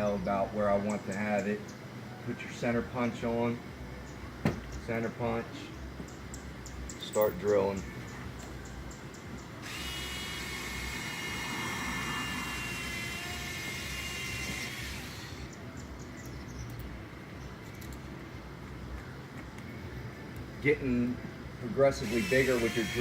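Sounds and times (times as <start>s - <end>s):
power drill whine: 9.6s - 15.5s, 22.0s - 23.0s.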